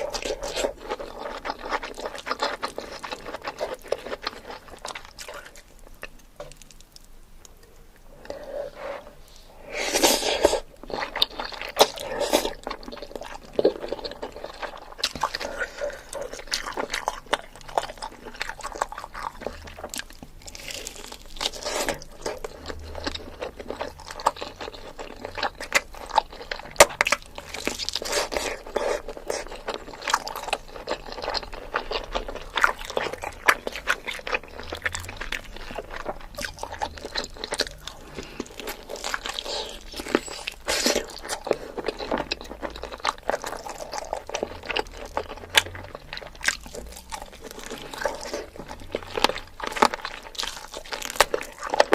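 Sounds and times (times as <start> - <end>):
crunchy bites and chewing: 0.0 - 7.1, 9.8 - 51.9.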